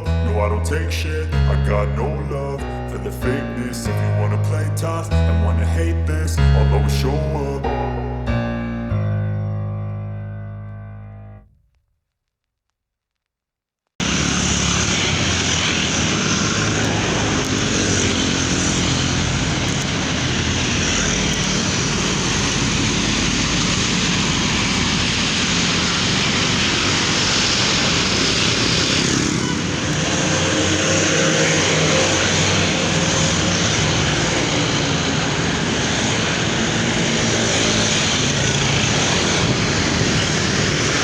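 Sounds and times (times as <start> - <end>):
engine drone: 14.0 - 41.0
loud rush of noise: 14.0 - 41.0.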